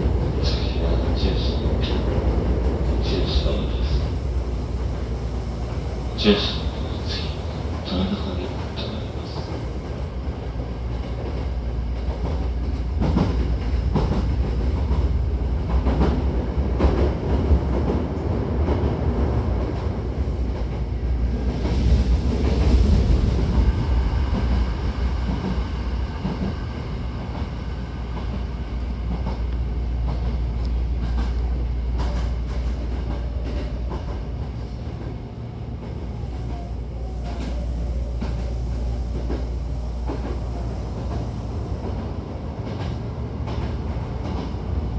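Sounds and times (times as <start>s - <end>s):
train wheels rumbling: 0.0s - 44.9s
rail joint clicks: 4.8s - 20.9s, 28.1s - 44.9s.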